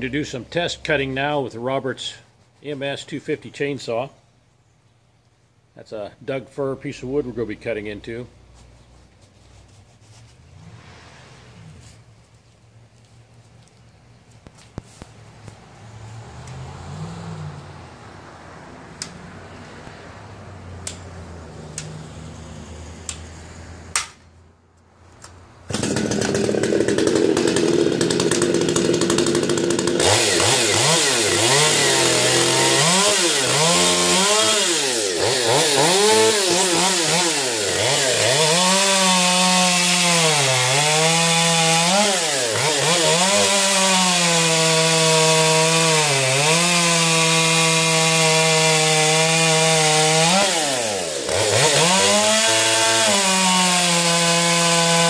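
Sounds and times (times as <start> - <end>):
chainsaw cutting wood: 25.7 - 55.0.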